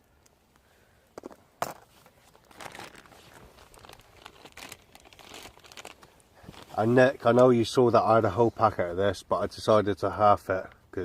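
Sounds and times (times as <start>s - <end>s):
food wrapper crinkling: 1.6s - 7.4s.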